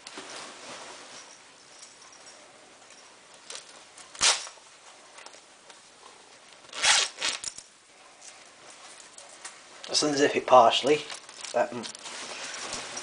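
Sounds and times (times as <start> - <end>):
sleeping bag rustling: 0.0 - 2.4, 6.4 - 7.7, 10.9 - 13.0.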